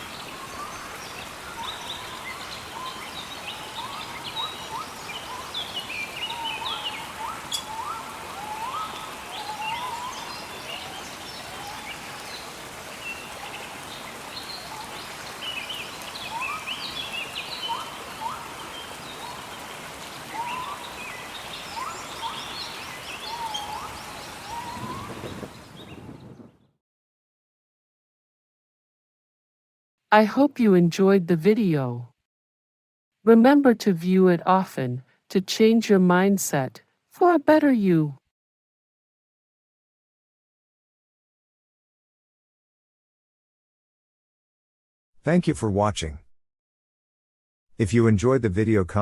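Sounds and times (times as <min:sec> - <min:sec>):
birds chirping: 0:00.0 - 0:26.6
rain hissing: 0:05.0 - 0:26.4.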